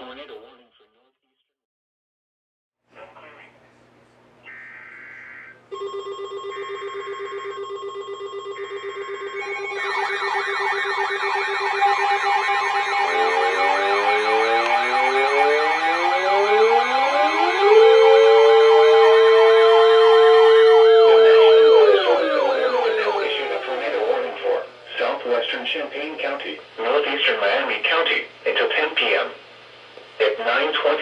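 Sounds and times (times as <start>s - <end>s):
sirens winding up: 5.4s - 25.2s
fast-warbling siren: 6.6s - 24.9s
steady pulsing siren tone: 6.6s - 25.2s.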